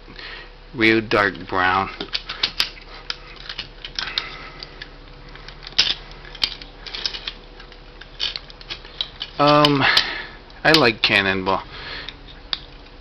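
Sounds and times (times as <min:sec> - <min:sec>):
plastic toy parts clicking: 0:02.0 - 0:04.8, 0:05.6 - 0:10.1.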